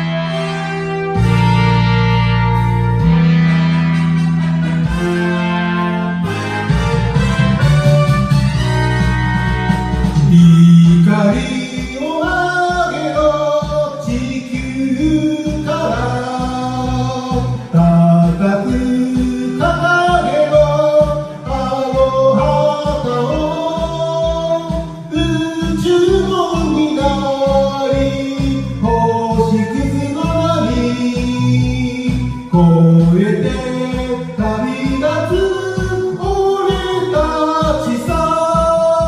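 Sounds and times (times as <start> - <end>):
backing track with driving beat: 0.0 - 39.0
person singing: 10.2 - 39.0.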